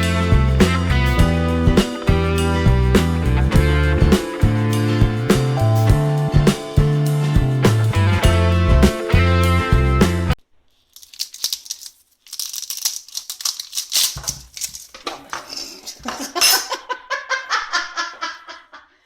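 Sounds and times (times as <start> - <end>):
person laughing: 16.0 - 18.9.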